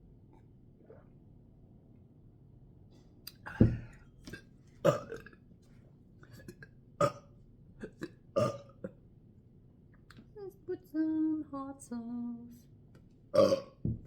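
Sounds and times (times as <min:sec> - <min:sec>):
woman burping: 0:04.9 - 0:05.4, 0:06.4 - 0:07.2, 0:07.8 - 0:09.0, 0:13.4 - 0:14.0.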